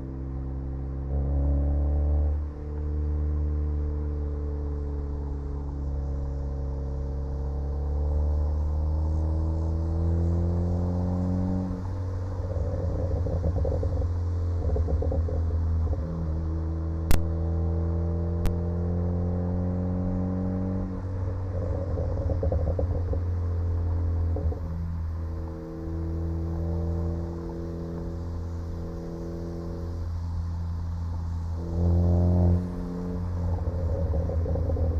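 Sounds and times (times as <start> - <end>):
car exhaust revving: 7.2 - 34.9
exhaust crackles and pops: 12.4 - 16.4, 17.0 - 17.4, 18.4 - 18.6, 21.5 - 24.8, 31.6 - 34.9.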